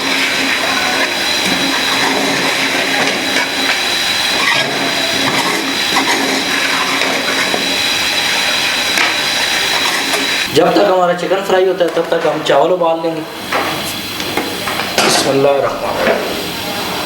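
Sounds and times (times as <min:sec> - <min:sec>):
chicken sizzling in oil: 0:00.0 - 0:11.0.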